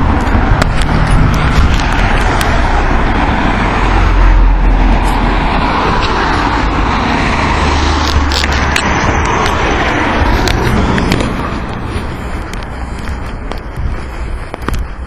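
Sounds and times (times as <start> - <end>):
cars passing on a road: 0.0 - 15.0.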